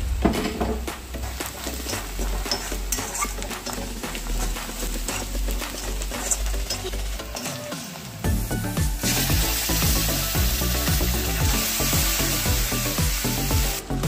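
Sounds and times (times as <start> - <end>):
spoon stirring and scraping in a pan: 1.2 - 8.1.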